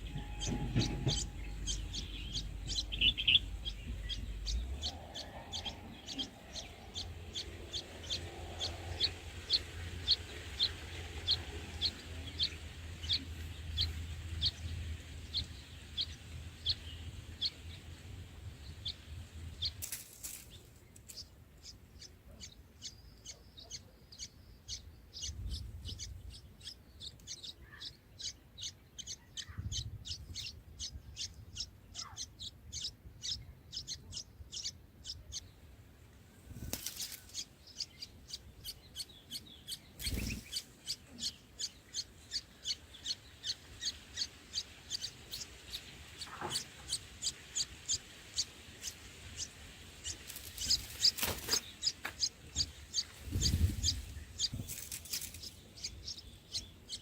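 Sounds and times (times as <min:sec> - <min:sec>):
low rumble: 0:00.0 - 0:19.7
small bird chirping: 0:00.0 - 0:57.0.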